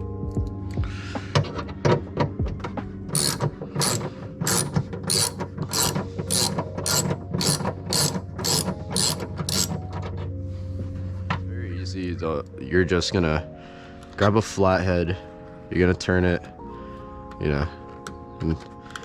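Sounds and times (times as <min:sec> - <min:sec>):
irregular clicks and knocks: 0:01.3 - 0:10.4
ratchet wrench clicking: 0:03.2 - 0:09.8.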